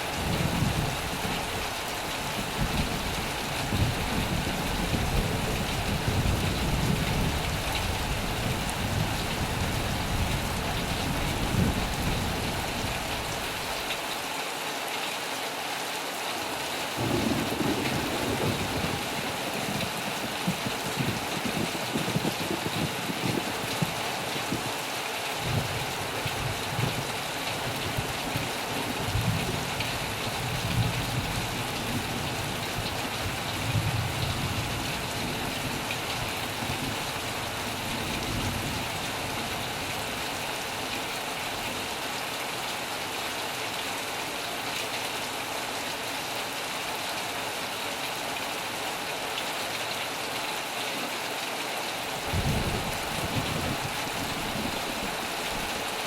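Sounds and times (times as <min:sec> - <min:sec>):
heavy rain: 0:00.0 - 0:56.0
low rumbles of thunder: 0:02.4 - 0:13.0, 0:17.0 - 0:24.6, 0:52.2 - 0:55.7.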